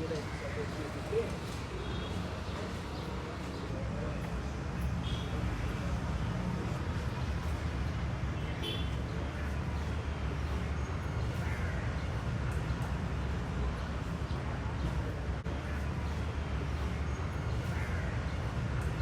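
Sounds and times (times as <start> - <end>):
crows cawing: 11.4 - 11.9, 17.7 - 18.3.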